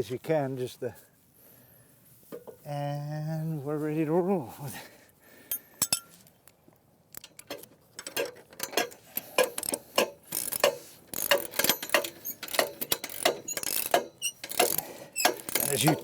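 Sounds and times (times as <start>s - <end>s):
ratchet wrench clicking: 7.2s - 16.0s.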